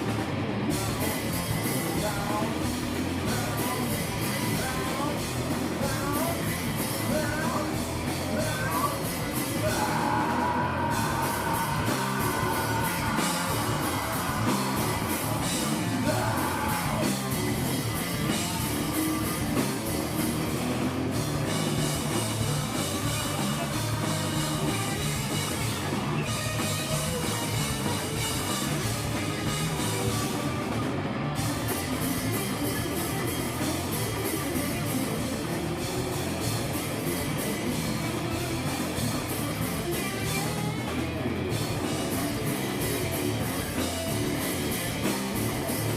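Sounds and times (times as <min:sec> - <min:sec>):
live rock band playing: 0:00.0 - 0:45.9
singer shouting and singing: 0:00.7 - 0:20.8, 0:21.4 - 0:30.7.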